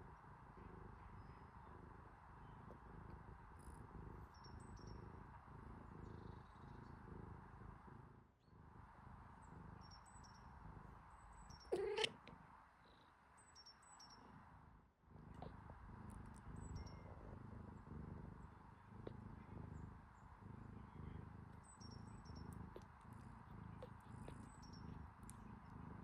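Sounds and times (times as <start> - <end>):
cat purring: 0.0 - 26.0
cat meow: 11.7 - 12.3.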